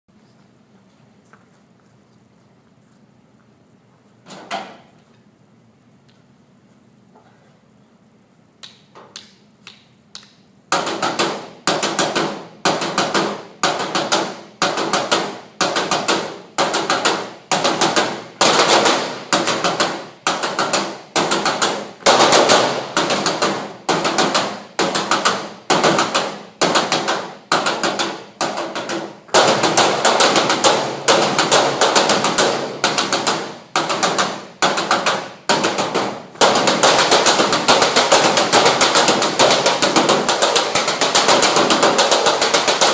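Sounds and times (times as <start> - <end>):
drums playing fast pattern: 10.7 - 42.9.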